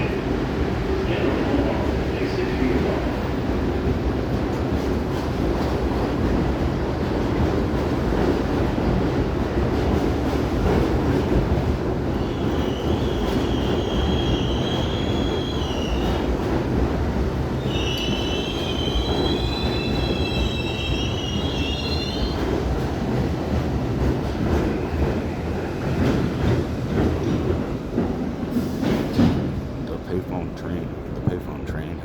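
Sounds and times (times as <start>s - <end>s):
subway train rumbling: 0.0s - 32.0s
train wheels squealing: 12.2s - 16.3s, 17.6s - 22.5s.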